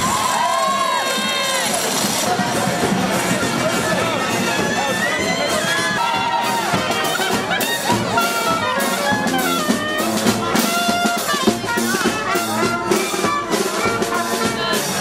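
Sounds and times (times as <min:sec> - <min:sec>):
brass band playing: 0:00.0 - 0:15.0
steady drum beat: 0:00.0 - 0:15.0.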